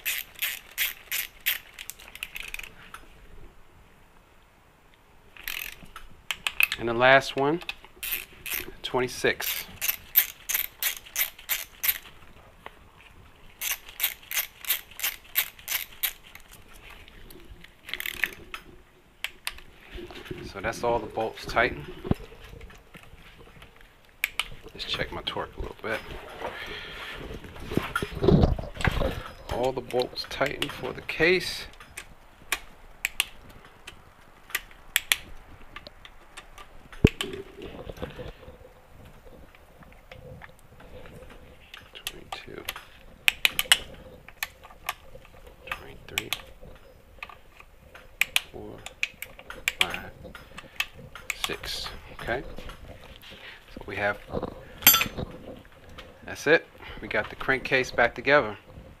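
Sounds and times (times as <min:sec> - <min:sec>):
socket ratchet clicking: 0:00.0 - 0:02.7, 0:05.4 - 0:05.8, 0:07.6 - 0:08.7, 0:09.4 - 0:12.1, 0:13.6 - 0:16.5
hand tools clicking and clinking: 0:00.0 - 0:02.8, 0:05.4 - 0:12.2, 0:13.6 - 0:17.0, 0:17.8 - 0:19.7, 0:40.8 - 0:53.2, 0:53.9 - 0:56.1.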